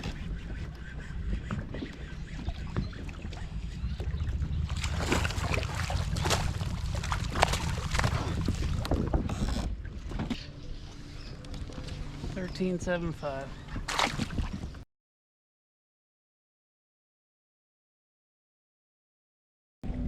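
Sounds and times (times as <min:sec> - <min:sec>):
wind rumbling on microphone: 0:00.0 - 0:14.8
water splashes and knocks: 0:02.4 - 0:10.4, 0:13.8 - 0:14.8.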